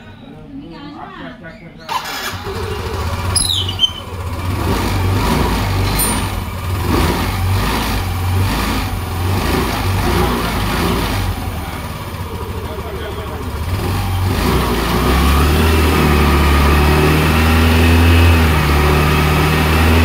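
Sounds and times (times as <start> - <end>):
scooter engine starting and running: 1.9 - 20.0
short falling squeal: 2.6 - 4.2.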